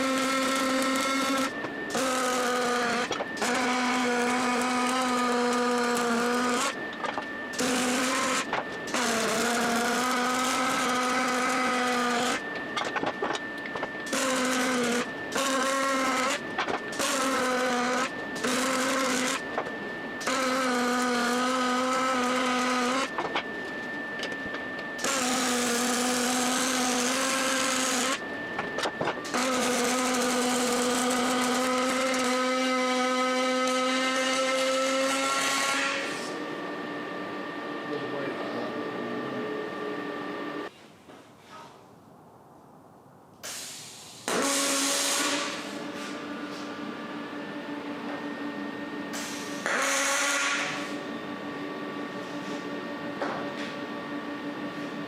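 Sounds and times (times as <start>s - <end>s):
electric power tool motor bursts: 0.0s - 36.3s, 43.4s - 46.6s, 49.1s - 51.0s.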